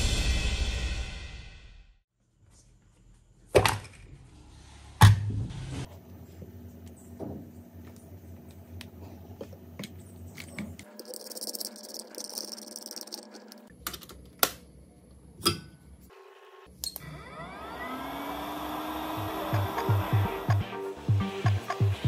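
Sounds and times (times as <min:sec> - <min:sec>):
small motor whirring: 0:17.0 - 0:20.6.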